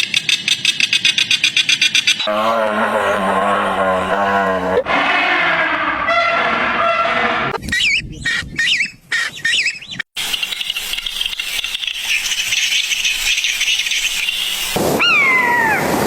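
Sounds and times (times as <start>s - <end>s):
bird calls sweeping in pitch: 12.0s - 15.9s.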